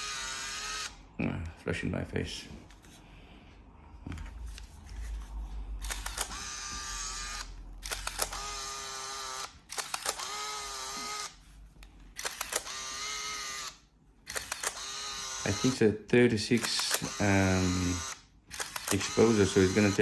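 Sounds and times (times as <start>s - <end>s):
camera film winder whirring: 0.0s - 1.0s, 5.8s - 11.4s, 12.1s - 15.8s, 16.6s - 20.0s
camera shutter click: 5.8s - 11.3s, 12.1s - 15.8s, 16.6s - 20.0s.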